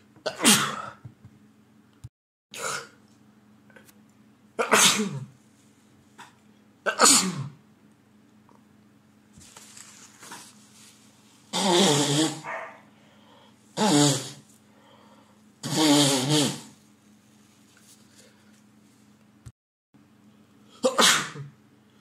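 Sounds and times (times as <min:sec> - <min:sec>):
man sneezing: 0:00.3 - 0:01.0, 0:02.6 - 0:03.0, 0:04.6 - 0:05.3, 0:20.8 - 0:21.5
faint breathing: 0:12.9 - 0:13.6, 0:14.6 - 0:15.5.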